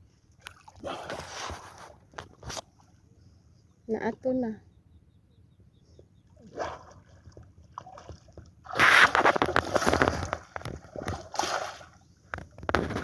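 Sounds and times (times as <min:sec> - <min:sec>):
water splashing and sloshing: 0:00.0 - 0:03.2, 0:06.2 - 0:13.0.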